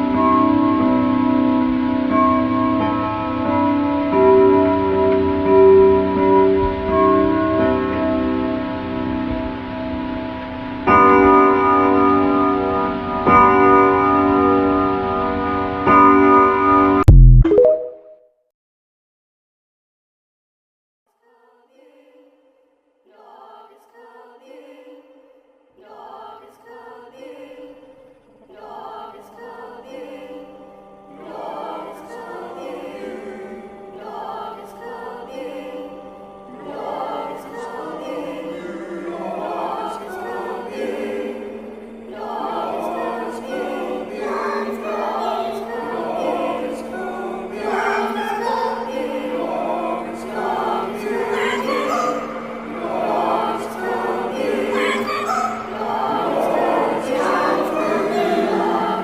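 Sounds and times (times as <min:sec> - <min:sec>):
choral music: 0:00.0 - 0:18.2, 0:21.2 - 0:59.0.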